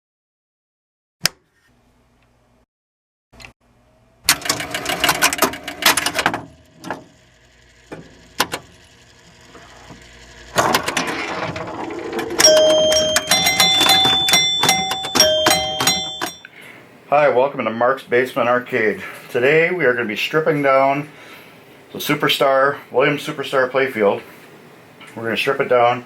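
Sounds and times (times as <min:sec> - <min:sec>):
pinball machine relays clicking: 0:04.3 - 0:07.1, 0:10.6 - 0:16.4.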